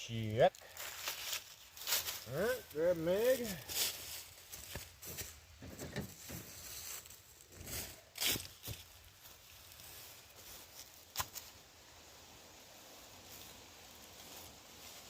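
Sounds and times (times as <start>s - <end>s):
rustling: 0.2s - 15.0s
footsteps: 0.6s - 11.6s.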